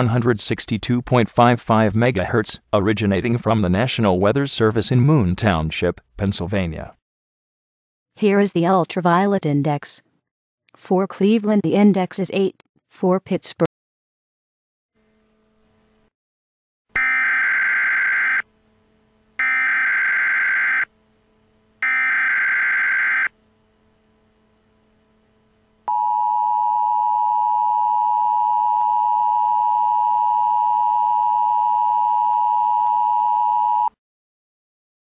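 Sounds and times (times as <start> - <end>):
steady warning alarm tone: 17.0 - 18.5, 19.4 - 20.9, 21.8 - 23.4
screeching digital data tones: 19.4 - 20.9, 21.8 - 23.3.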